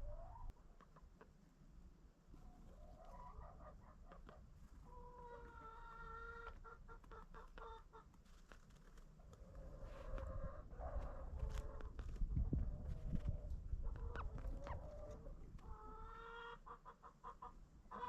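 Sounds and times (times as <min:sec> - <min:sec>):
hens clucking: 0:02.6 - 0:08.1, 0:12.8 - 0:18.0.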